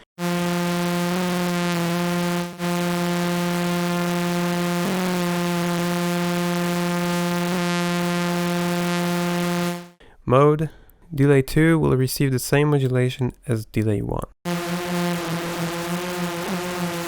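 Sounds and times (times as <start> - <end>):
held synthesizer note: 0.0 - 10.0, 14.5 - 17.0.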